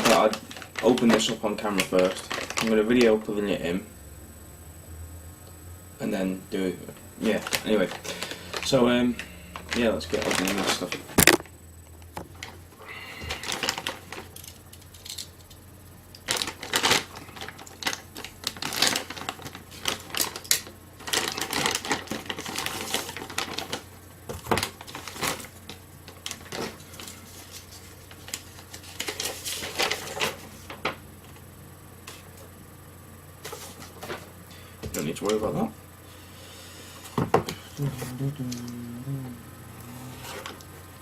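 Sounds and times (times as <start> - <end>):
packaging being opened by hand: 0.0 - 3.1, 9.6 - 11.5, 13.2 - 15.3, 16.2 - 30.9.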